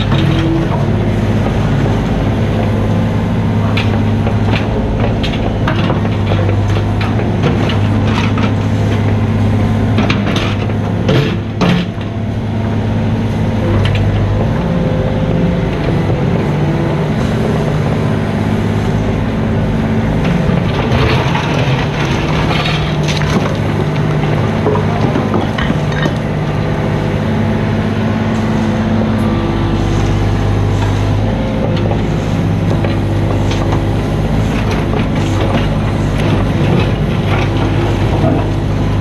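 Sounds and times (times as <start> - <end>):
excavator diesel engine: 0.0 - 39.0
bucket rattling and scraping: 20.1 - 26.4, 29.8 - 39.0.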